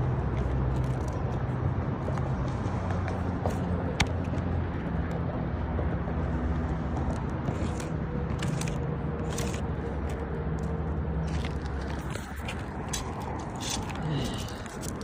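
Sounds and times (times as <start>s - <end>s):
low engine-like hum: 0.0s - 15.0s
tool scraping shingle: 7.4s - 10.2s, 11.2s - 15.0s.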